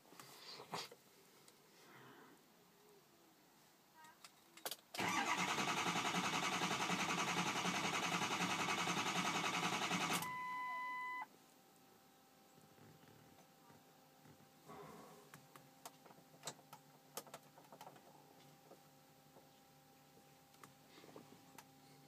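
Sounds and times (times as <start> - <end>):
diesel engine cranking: 5.0 - 10.3
electronic beep: 10.2 - 11.2.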